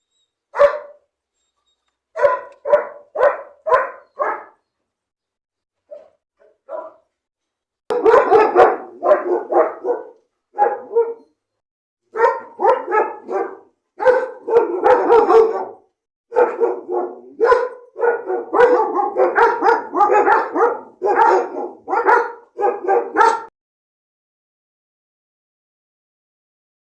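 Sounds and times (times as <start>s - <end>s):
dog barking: 0.5s - 1.1s, 2.2s - 4.6s, 5.9s - 7.1s, 7.9s - 11.4s, 12.1s - 23.5s.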